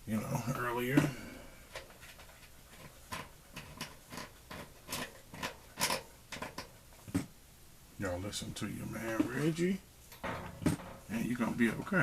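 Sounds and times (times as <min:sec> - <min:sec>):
metal parts clicking and rustling: 0:01.7 - 0:06.8, 0:09.0 - 0:11.8.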